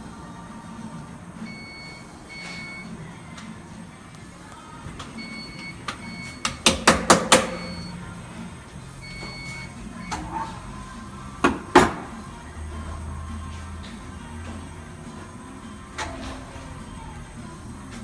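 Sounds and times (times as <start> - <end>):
short electronic beeps: 1.5 - 2.9, 5.2 - 6.5, 7.5 - 8.0, 9.0 - 10.3.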